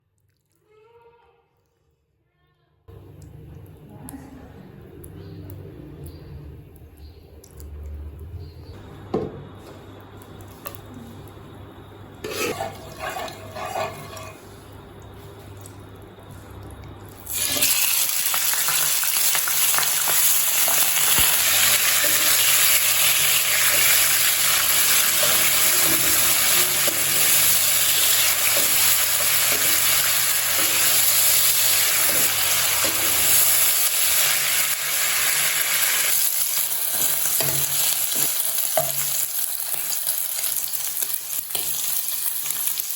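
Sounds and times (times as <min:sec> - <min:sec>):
food sizzling in a pan: 0:12.2 - 0:15.3, 0:17.2 - 0:42.9
utensils clattering: 0:12.3 - 0:14.6.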